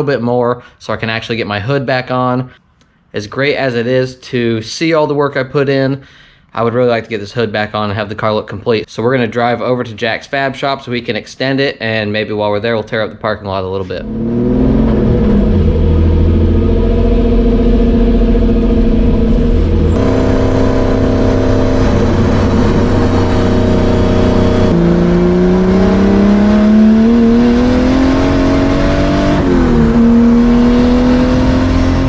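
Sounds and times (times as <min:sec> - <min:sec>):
car engine accelerating: 0:14.0 - 0:32.0.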